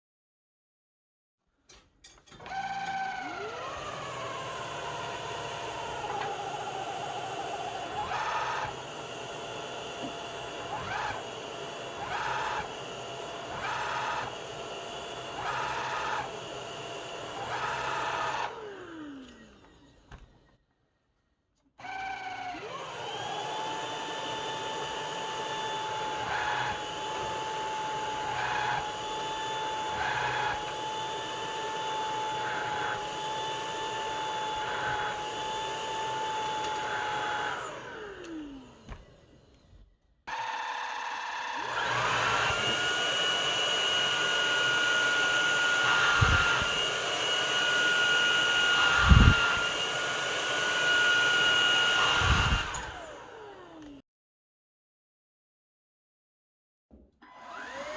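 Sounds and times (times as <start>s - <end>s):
stick vacuum motor whining: 2.3s - 20.6s, 21.8s - 54.0s, 57.2s - 57.9s.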